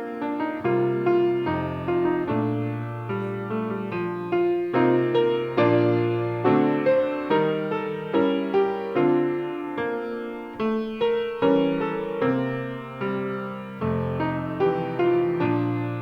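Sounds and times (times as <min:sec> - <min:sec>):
piano playing slow chords: 0:00.0 - 0:16.0.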